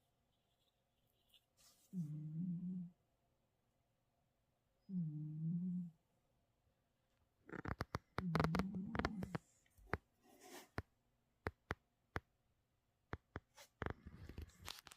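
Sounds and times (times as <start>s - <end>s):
cat snoring: 2.0s - 3.0s, 4.9s - 6.0s, 7.5s - 9.5s.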